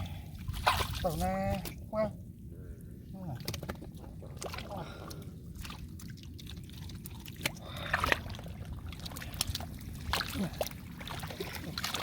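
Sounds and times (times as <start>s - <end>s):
water dripping and splashing: 0.4s - 1.8s, 3.3s - 12.0s
mud squelching: 3.3s - 12.0s.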